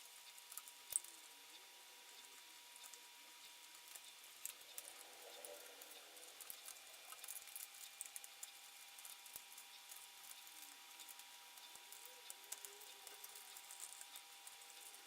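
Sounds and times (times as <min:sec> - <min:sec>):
thin steady hum: 0:00.0 - 0:15.0.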